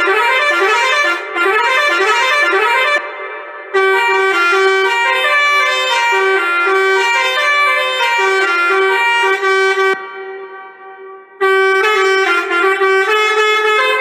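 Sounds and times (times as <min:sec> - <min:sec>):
multi-tone bus air horn tune: 0:00.0 - 0:14.0.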